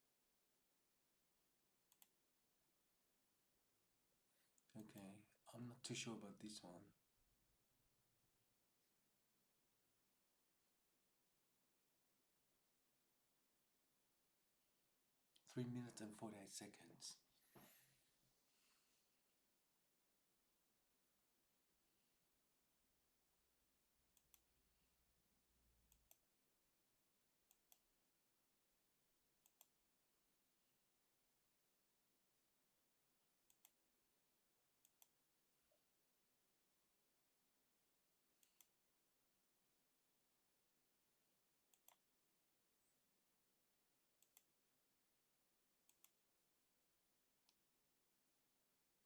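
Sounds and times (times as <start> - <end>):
computer mouse clicks: 1.9 - 2.2, 24.1 - 24.5, 25.9 - 26.3, 27.5 - 27.9, 29.4 - 29.8, 33.5 - 33.8, 34.8 - 35.2, 38.4 - 38.8, 41.7 - 42.0, 44.2 - 44.5, 45.8 - 46.2.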